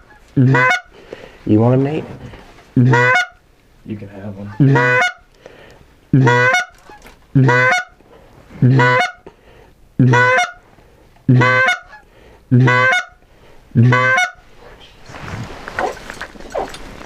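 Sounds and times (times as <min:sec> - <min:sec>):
goose call honks: 0:00.0 - 0:00.9, 0:02.8 - 0:03.4, 0:04.5 - 0:05.2, 0:06.2 - 0:08.0, 0:08.6 - 0:09.2, 0:10.0 - 0:10.6, 0:11.3 - 0:13.2, 0:13.8 - 0:14.4.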